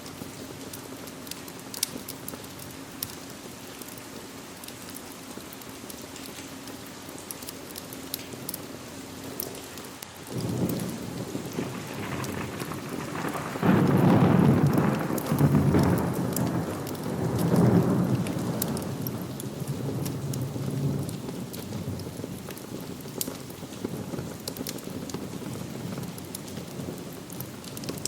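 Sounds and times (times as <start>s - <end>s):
steady rain falling: 0.0s - 28.0s
thunder rumbling: 10.2s - 22.6s.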